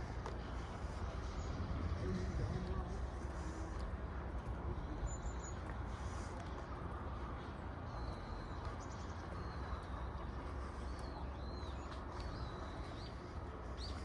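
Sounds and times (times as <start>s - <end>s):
steady rushing noise: 0.0s - 7.9s
small birds chirping: 4.8s - 6.4s, 7.2s - 14.0s.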